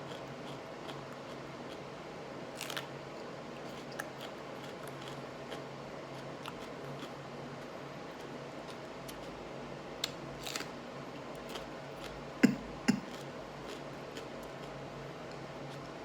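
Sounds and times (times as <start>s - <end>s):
peppers being chewed: 0.1s - 1.9s, 2.6s - 2.9s, 3.7s - 7.2s, 11.4s - 16.0s
steady low hum: 10.8s - 16.0s
wet mouth clicks: 12.4s - 13.1s.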